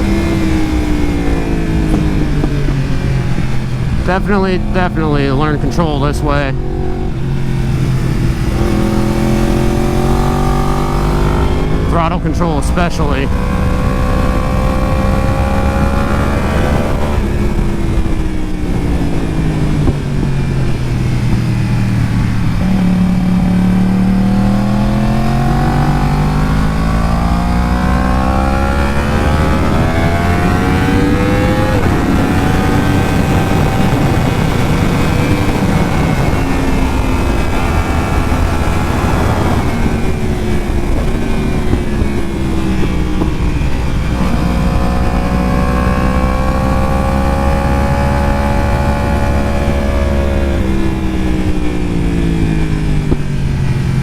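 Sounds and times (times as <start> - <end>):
gear change: 0.0 - 54.0
motorcycle engine revving: 0.0 - 54.0
steady rush of noise: 0.0 - 54.0.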